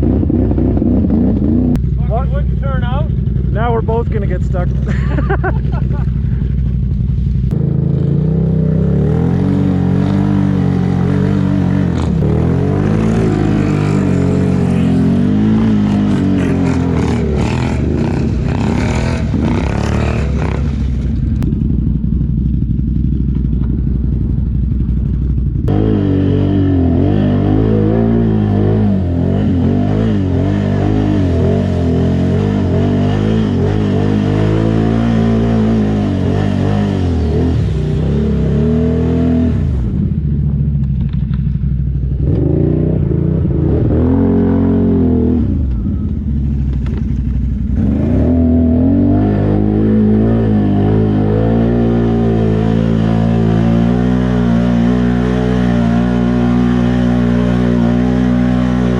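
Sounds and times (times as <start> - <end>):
quad engines revving: 7.5 - 21.2, 25.7 - 40.2, 42.2 - 45.8, 46.6 - 58.9.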